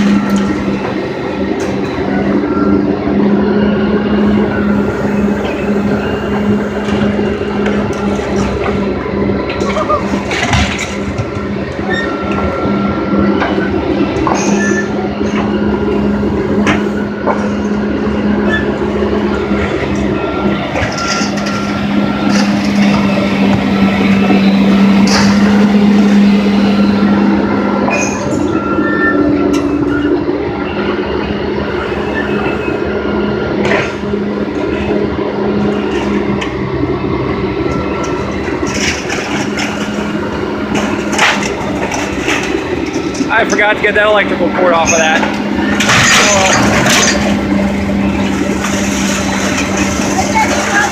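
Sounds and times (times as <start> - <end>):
crane engine hum: 0.0 - 50.9
short metallic squeals: 13.3 - 15.7
scrap metal clanking and scraping: 16.6 - 26.1, 37.8 - 50.9.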